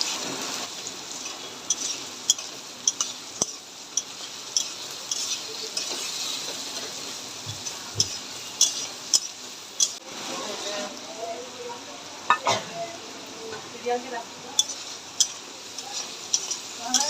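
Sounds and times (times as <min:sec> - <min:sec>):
food sizzling in hot oil: 0:00.0 - 0:17.0
metal spatula scraping pan: 0:01.1 - 0:07.0.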